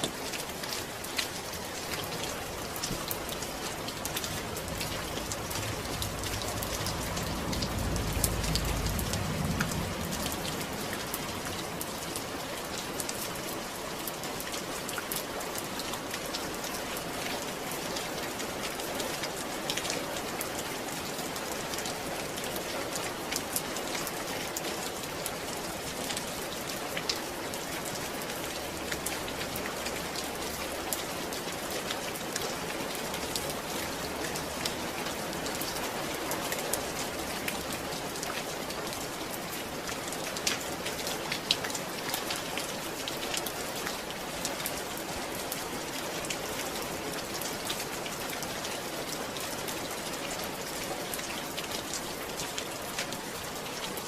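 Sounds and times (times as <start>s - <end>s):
rain falling: 0.0s - 54.0s
raindrops ticking on surface: 0.0s - 54.0s.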